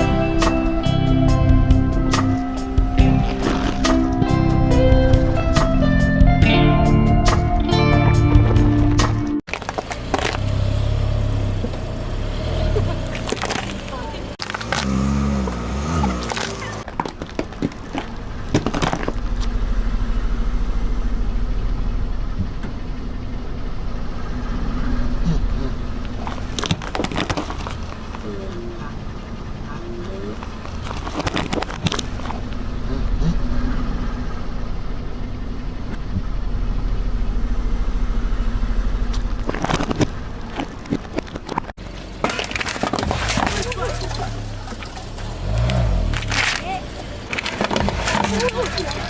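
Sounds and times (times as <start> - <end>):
car engine running: 0.0 - 16.9, 17.8 - 49.0
tyre crushing brittle objects: 9.5 - 10.6, 13.2 - 19.2, 39.4 - 49.0.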